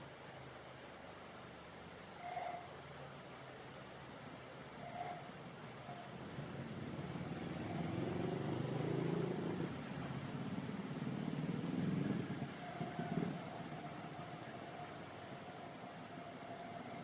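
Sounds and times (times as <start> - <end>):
vehicle engine climbing hill: 6.8 - 15.2.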